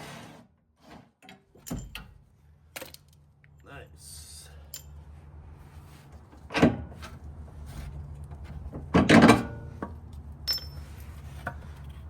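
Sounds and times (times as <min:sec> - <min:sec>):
metal parts clunking and rattling: 0:01.2 - 0:03.2, 0:08.4 - 0:11.9
metal clatter with ring: 0:10.4 - 0:11.2.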